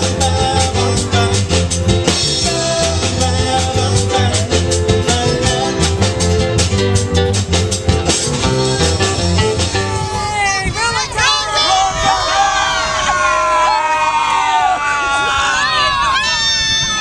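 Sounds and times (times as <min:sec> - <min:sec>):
person singing: 0:00.0 - 0:06.4
upbeat band music: 0:00.0 - 0:17.0.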